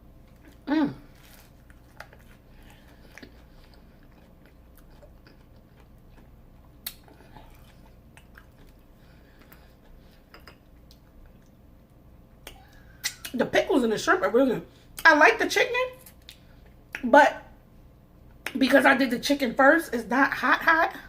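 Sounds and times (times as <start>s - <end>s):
person chewing crunchy food: 0.2s - 11.7s.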